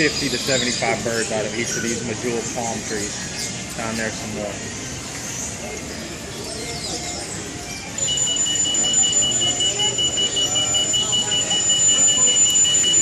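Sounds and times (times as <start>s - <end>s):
high-pitched electronic tone: 7.9s - 13.0s.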